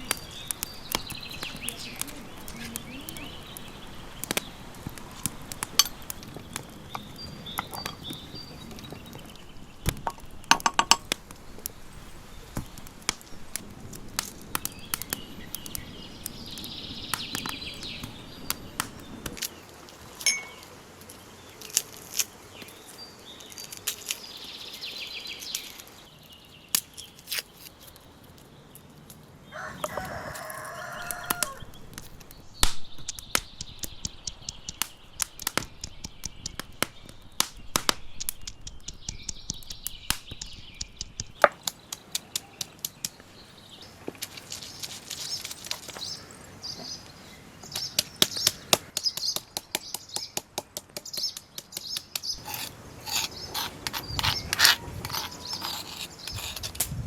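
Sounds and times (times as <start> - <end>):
sharp clicks and knocks: 9.9 - 11.2
rooster crowing: 29.5 - 31.7.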